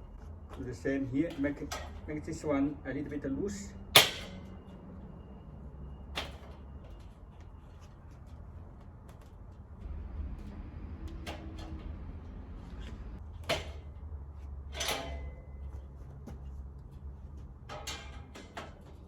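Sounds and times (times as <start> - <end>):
sharp metal knocks: 3.9 - 4.6.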